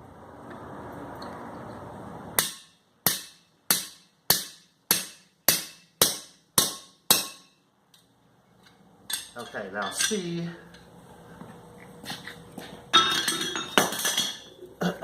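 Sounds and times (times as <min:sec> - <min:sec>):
hammer striking metal: 0:02.4 - 0:07.6.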